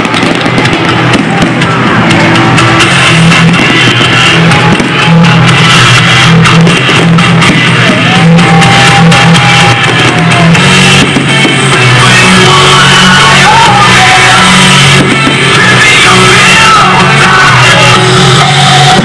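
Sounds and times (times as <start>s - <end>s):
drums: 0.0s - 19.0s
loud rock music: 0.0s - 19.0s
repeating bass line: 0.0s - 19.0s
person shouted singing: 11.9s - 19.0s.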